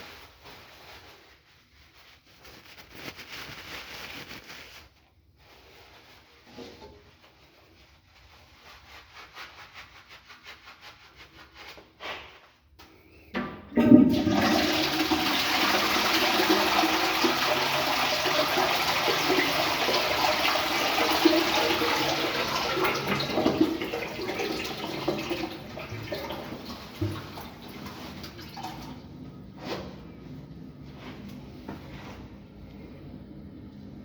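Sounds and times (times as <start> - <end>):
toilet flush lever clunk: 13.4 - 14.6
toilet water rushing: 13.7 - 29.0.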